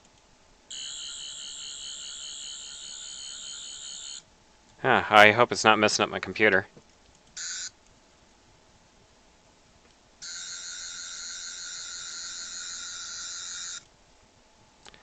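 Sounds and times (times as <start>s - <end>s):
toy high buzzing tone: 0.7s - 4.2s, 7.4s - 7.8s, 10.2s - 13.9s.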